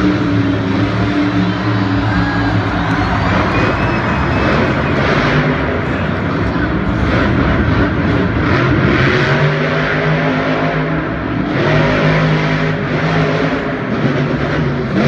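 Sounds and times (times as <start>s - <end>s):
truck engine revving loudly: 0.0s - 15.0s.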